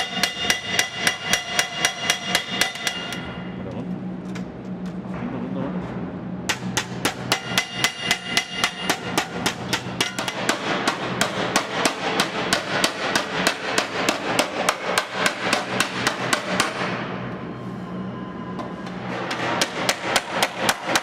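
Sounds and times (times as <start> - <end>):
hammer beating sheet metal: 0.0 - 3.4, 6.5 - 17.0, 19.1 - 21.0
steady low hum: 0.0 - 21.0.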